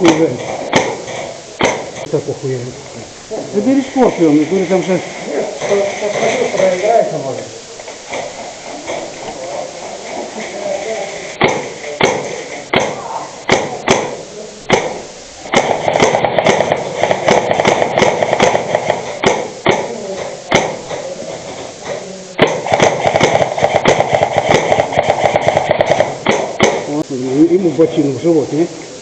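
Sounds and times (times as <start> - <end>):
rapid automatic airsoft fire: 0.0 - 2.1, 3.6 - 7.4, 8.1 - 27.0
airsoft gun single shots: 0.1 - 2.0, 11.4 - 19.9, 20.5 - 21.0, 22.4 - 26.9.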